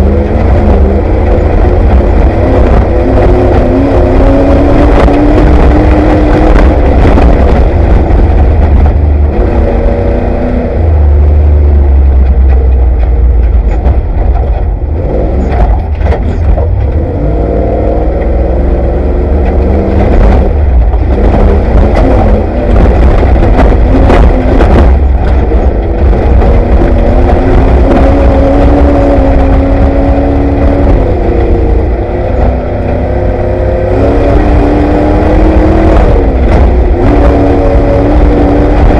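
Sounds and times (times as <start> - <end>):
engine revving: 0.0 - 38.9
road roar: 0.0 - 38.9
knocks and rattles: 12.0 - 17.2, 19.3 - 38.9.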